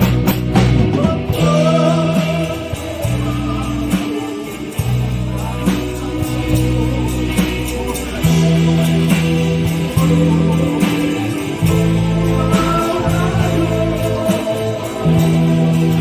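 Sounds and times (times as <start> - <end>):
live band playing pop song: 0.0 - 16.0.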